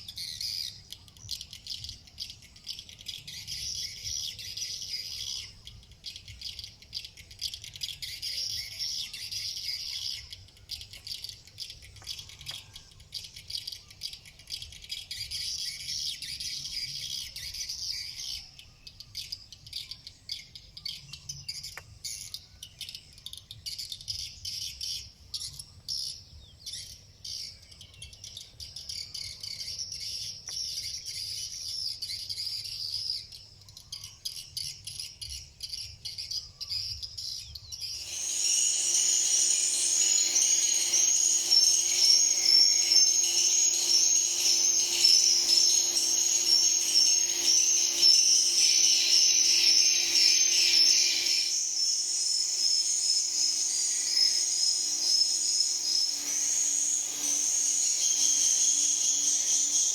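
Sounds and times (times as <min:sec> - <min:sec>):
swiftlets twittering: 0:37.7 - 0:59.9
repeating chirp call: 0:37.8 - 0:59.9.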